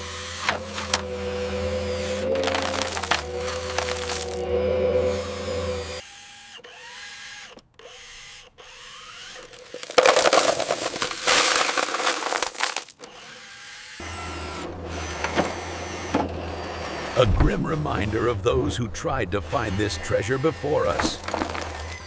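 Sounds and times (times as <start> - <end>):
small electric motors whining: 0.0 - 10.3, 12.9 - 17.2, 20.3 - 22.0
loud gritty rattle: 0.4 - 4.6, 21.0 - 22.0.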